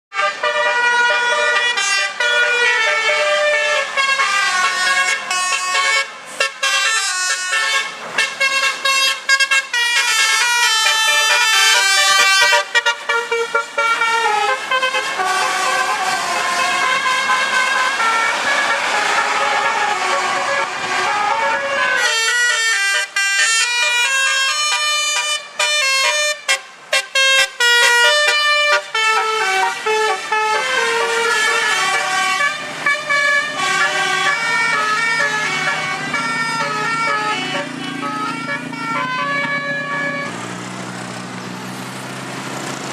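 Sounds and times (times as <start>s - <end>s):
multi-trumpet bus horn melody: 0.1s - 40.4s
passing traffic rumble: 0.1s - 42.9s.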